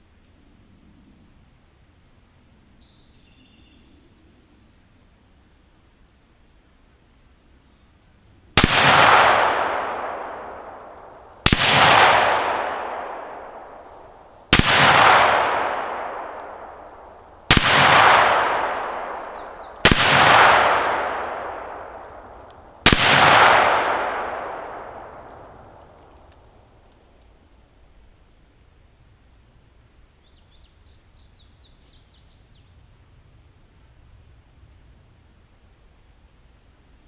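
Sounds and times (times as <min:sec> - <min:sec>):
rifle shots with echo: 0:08.6 - 0:26.4.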